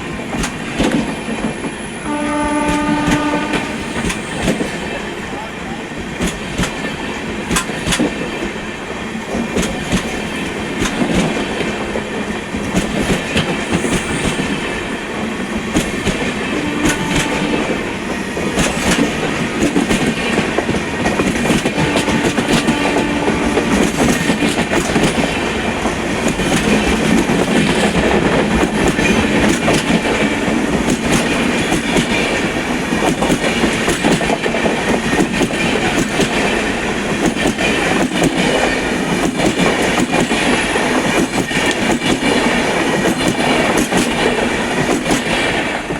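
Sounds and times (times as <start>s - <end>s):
clickety-clack over rail joints: 0.0s - 45.9s
train wheels rumbling: 0.0s - 45.9s.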